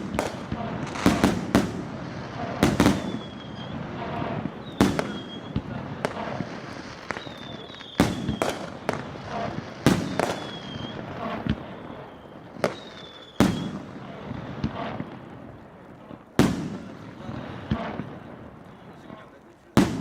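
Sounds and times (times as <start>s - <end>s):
firework cracks and pops: 0.0s - 20.0s
loud firework bangs: 0.0s - 20.0s
high firework whistle: 2.4s - 9.0s, 9.8s - 13.9s.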